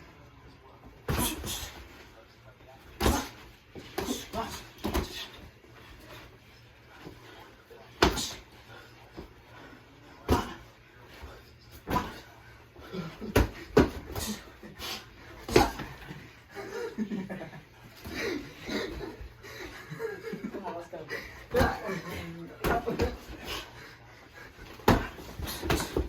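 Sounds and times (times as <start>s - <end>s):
boxing glove punches thudding: 3.0s - 5.4s, 8.0s - 8.4s, 10.3s - 10.6s, 11.8s - 12.3s, 13.2s - 14.5s, 15.4s - 16.1s, 24.8s - 26.0s.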